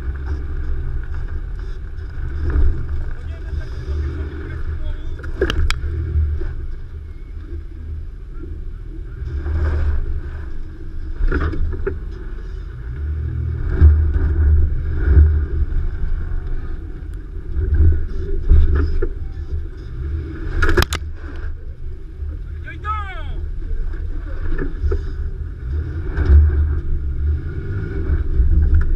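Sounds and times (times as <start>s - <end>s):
low engine and drivetrain rumble: 0.0s - 28.9s
truck knocks and clunks: 5.2s - 6.6s, 11.1s - 12.3s, 17.5s - 21.6s.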